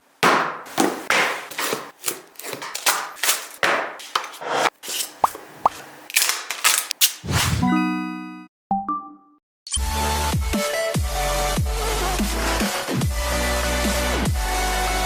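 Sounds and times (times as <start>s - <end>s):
packaging scraping and rustling: 1.0s - 5.3s, 6.1s - 7.3s.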